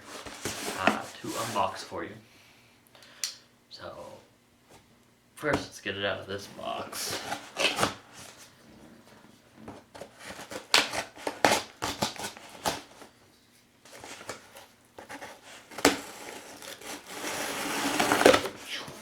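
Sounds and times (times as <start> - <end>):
cardboard box being handled: 0.0 - 1.8, 13.9 - 19.0.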